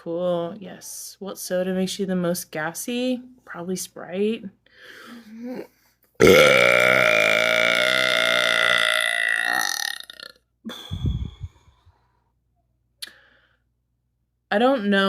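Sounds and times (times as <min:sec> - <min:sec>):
woman belching loudly: 0:06.2 - 0:10.4.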